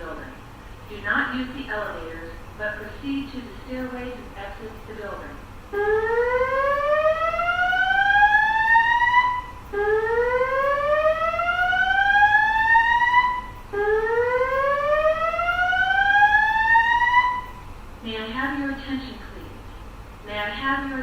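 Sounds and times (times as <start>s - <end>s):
fire alarm whoop tone: 5.8s - 17.7s.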